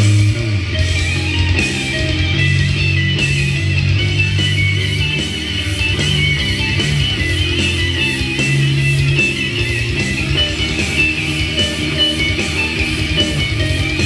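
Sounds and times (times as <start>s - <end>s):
rock song with electric guitar: 0.0s - 14.0s.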